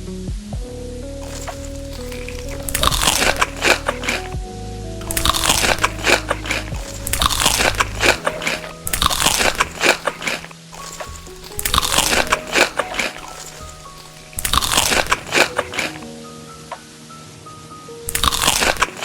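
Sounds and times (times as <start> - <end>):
background music: 0.0 - 19.0
crunchy food being chewed: 1.2 - 4.4, 5.0 - 16.0, 18.1 - 19.0.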